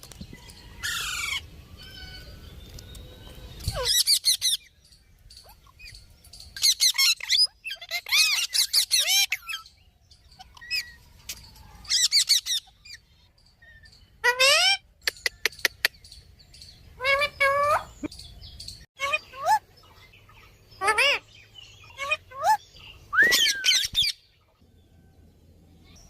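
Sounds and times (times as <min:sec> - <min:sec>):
parrots squawking: 0:03.7 - 0:04.7, 0:06.6 - 0:09.7, 0:11.8 - 0:13.1, 0:14.2 - 0:15.9, 0:17.0 - 0:18.0, 0:19.0 - 0:19.6, 0:20.3 - 0:21.2, 0:21.8 - 0:24.2.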